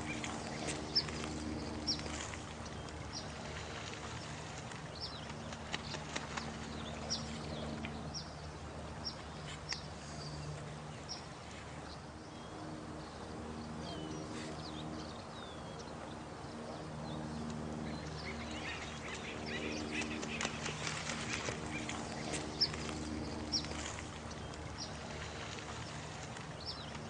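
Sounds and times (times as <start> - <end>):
low steady hum: 0.0 - 27.0
rush like running water: 0.0 - 27.0.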